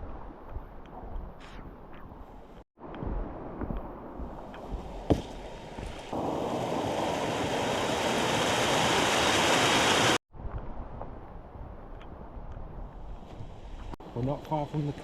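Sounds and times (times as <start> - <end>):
water rushing: 3.0 - 10.2.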